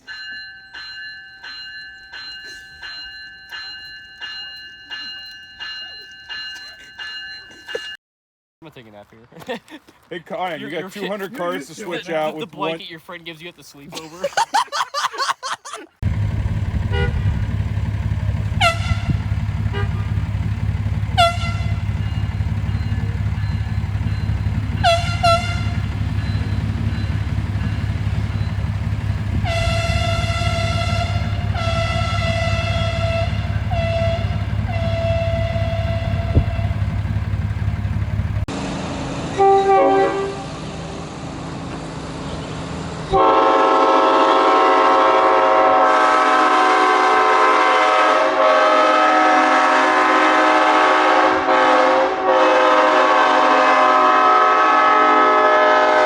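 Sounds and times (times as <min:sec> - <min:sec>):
locomotive rumble: 0:16.0 - 0:56.0
chord horn: 0:16.8 - 0:17.4, 0:18.5 - 0:20.3, 0:21.1 - 0:21.9, 0:24.8 - 0:25.9, 0:29.4 - 0:36.9, 0:39.3 - 0:41.0, 0:43.1 - 0:56.0
train horn blasts: 0:16.8 - 0:17.5, 0:18.4 - 0:22.0, 0:24.7 - 0:26.1, 0:29.3 - 0:37.0, 0:39.2 - 0:41.1, 0:43.1 - 0:56.0.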